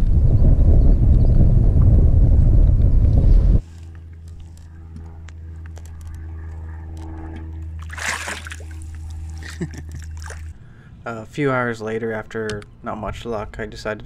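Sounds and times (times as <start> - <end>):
steady low hum: 0.0 - 14.0
water splash: 7.8 - 10.5.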